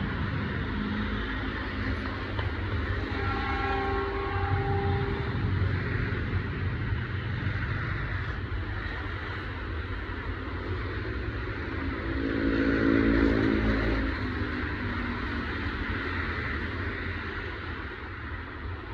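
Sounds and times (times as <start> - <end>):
passing train rumble: 0.0 - 18.9
rushing wind noise: 0.0 - 18.9.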